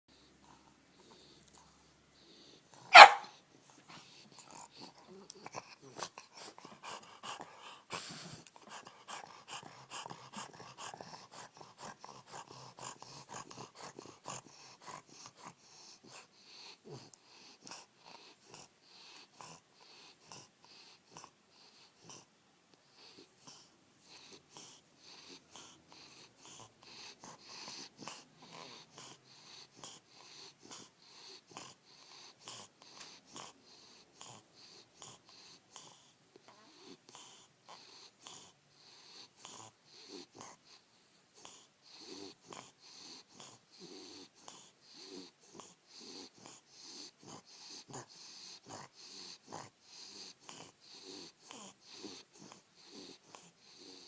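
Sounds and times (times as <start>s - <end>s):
dog snoring: 4.1s - 22.3s, 23.0s - 54.0s.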